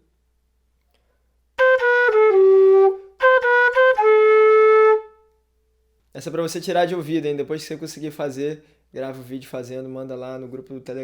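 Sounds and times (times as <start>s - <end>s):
notched flute melody: 1.6s - 5.3s.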